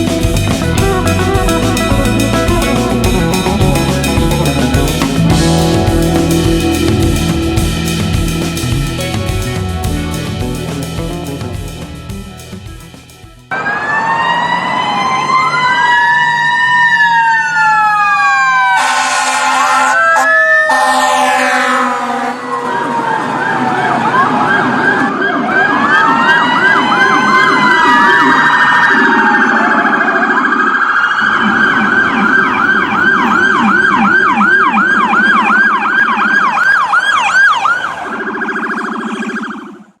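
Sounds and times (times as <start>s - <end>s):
electronic sirens wailing and yelping: 13.5s - 40.0s.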